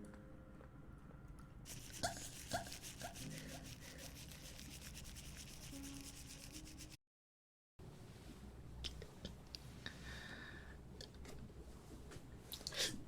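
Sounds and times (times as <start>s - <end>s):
fast rubbing or scratching: 1.7s - 7.0s.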